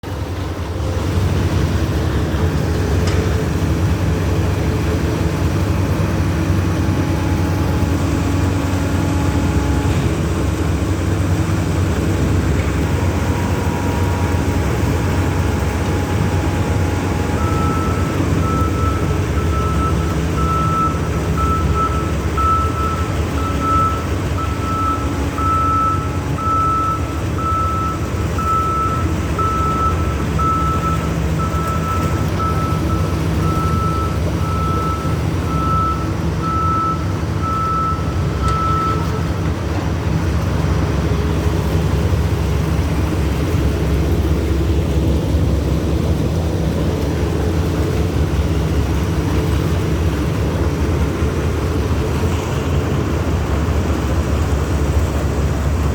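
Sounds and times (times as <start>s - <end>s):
heavy vehicle engine running: 0.0s - 55.9s
reversing alarm beeping: 5.8s - 10.7s, 11.7s - 39.4s.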